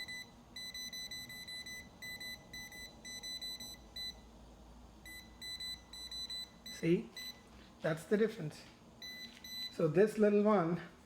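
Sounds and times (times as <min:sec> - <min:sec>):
voltage detector beeping: 0:00.0 - 0:04.3, 0:05.0 - 0:07.4, 0:09.0 - 0:09.9.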